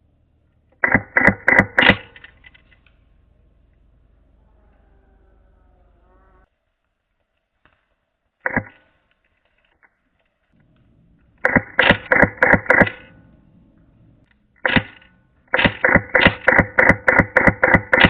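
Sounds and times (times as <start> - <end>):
airsoft rifle shots: 0.7 - 2.4, 8.4 - 9.0, 11.4 - 13.2, 14.6 - 18.0.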